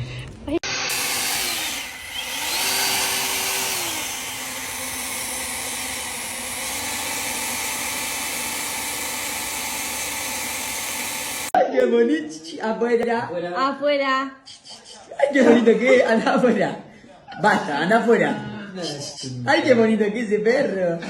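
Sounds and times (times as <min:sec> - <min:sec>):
small motor with rushing air: 0:00.7 - 0:11.6.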